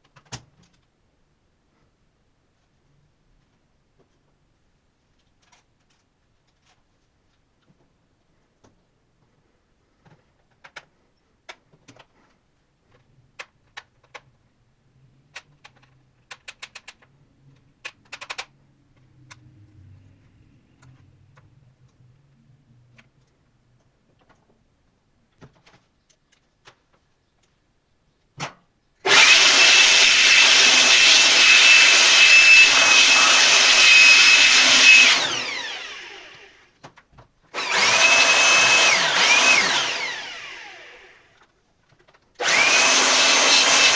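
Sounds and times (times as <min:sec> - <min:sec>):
high-speed electric tool whining: 0:29.1 - 0:36.6, 0:37.6 - 0:41.3, 0:42.4 - 0:43.9.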